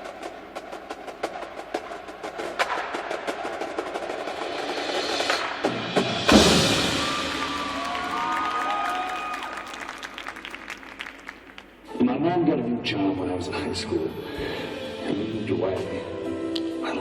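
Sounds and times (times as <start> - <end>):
percussion ensemble playing: 0.0 - 11.9
loud full-ensemble hit: 5.6 - 8.2.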